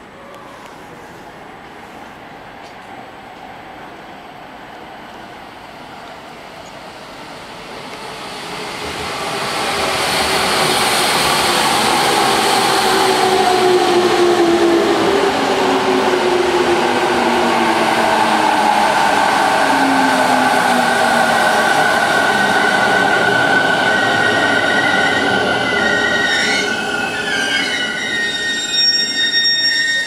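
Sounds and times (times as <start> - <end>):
electric train pulling in: 6.7 - 30.0.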